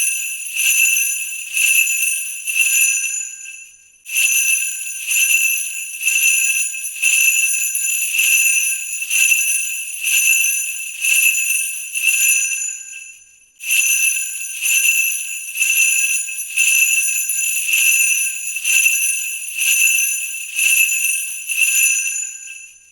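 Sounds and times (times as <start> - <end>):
sleigh bells jingling: 13.8 - 22.5.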